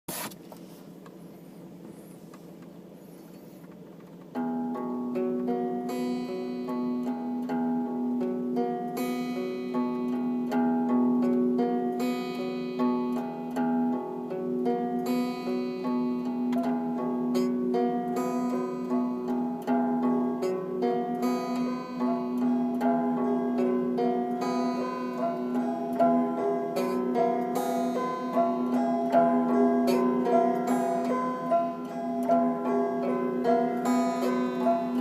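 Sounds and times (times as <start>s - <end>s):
faint steady hiss: 0.1s - 35.0s
plucked-string music: 2.7s - 35.0s.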